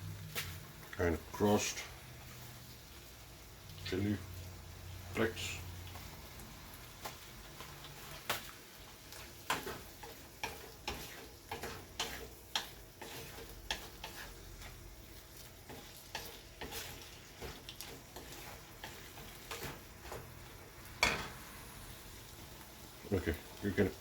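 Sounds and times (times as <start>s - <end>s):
faint sizzle: 0.0s - 24.0s
spatula scraping a pan: 8.9s - 21.7s.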